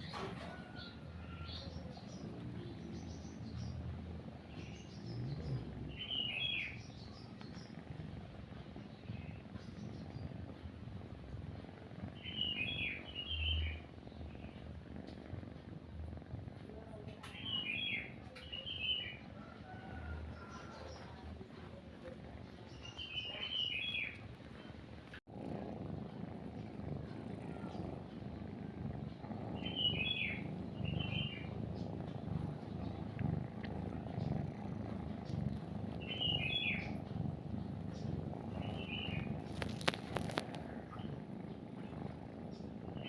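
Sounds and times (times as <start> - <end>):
kitten purring: 0.0 - 43.0
bird chirps: 4.6 - 7.7, 22.8 - 24.2, 29.6 - 31.5, 36.0 - 36.9, 37.9 - 39.3.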